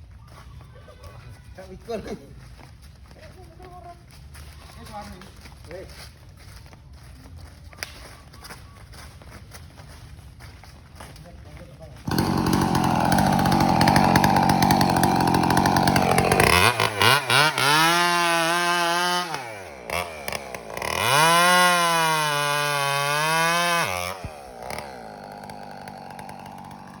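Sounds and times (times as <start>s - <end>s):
chainsaw cutting wood: 12.0s - 27.0s
chainsaw revving and idling: 12.0s - 27.0s.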